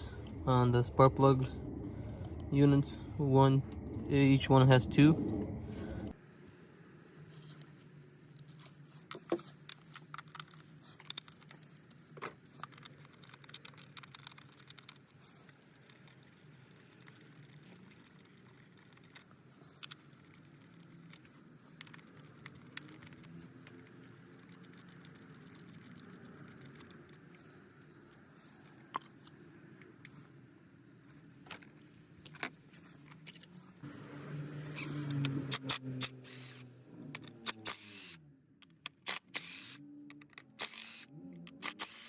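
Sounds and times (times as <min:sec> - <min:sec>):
faint low hum: 0:00.0 - 0:08.4.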